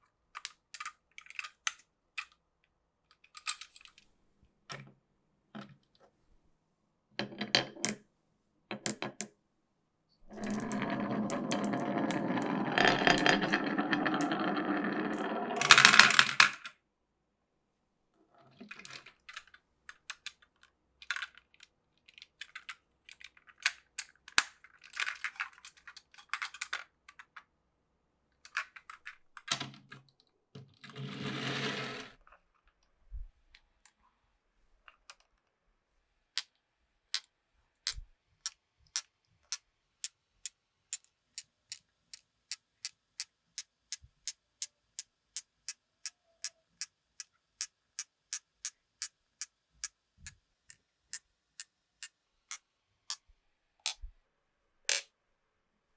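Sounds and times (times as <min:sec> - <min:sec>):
marbles rolling: 0:10.3 - 0:16.6
marbles clicking on wood: 0:10.4 - 0:16.6.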